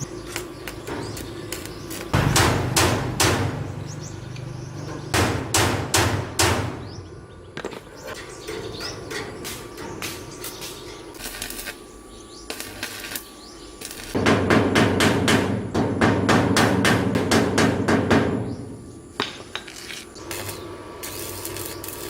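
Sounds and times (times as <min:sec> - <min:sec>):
birds chirping faintly: 0:00.0 - 0:02.8, 0:03.5 - 0:05.6, 0:06.7 - 0:14.2, 0:18.2 - 0:20.8
hammer blows: 0:02.1 - 0:03.8, 0:14.2 - 0:19.6.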